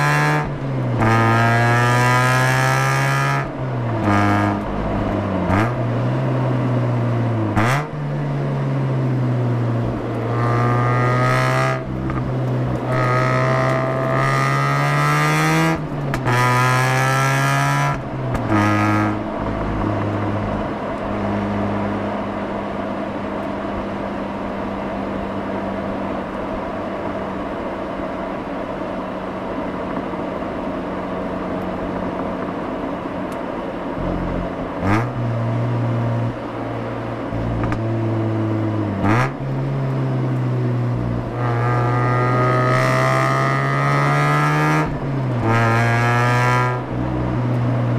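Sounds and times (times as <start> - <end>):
rotary engine revving: 10.2 - 20.6, 40.9 - 47.5.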